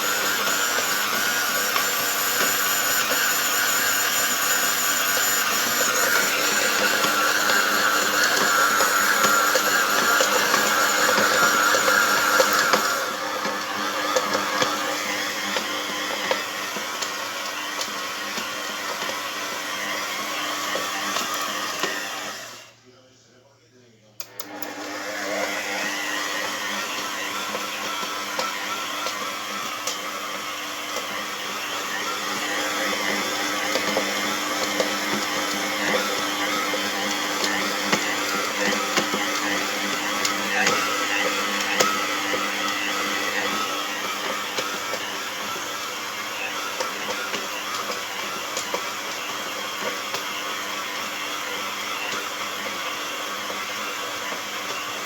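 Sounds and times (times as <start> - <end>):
stand mixer motor whine: 0.0 - 22.8, 24.2 - 55.0.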